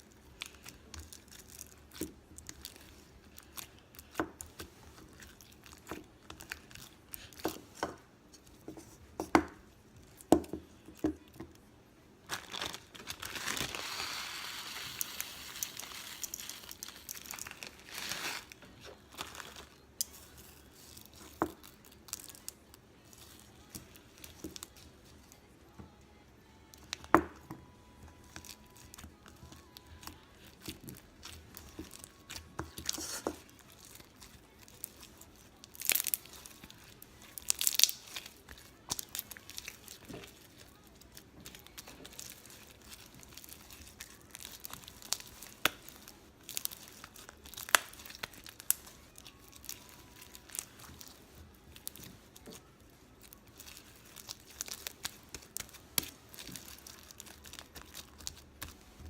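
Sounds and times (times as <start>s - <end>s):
slime crunching and popping: 12.3s - 20.2s, 28.2s - 59.0s.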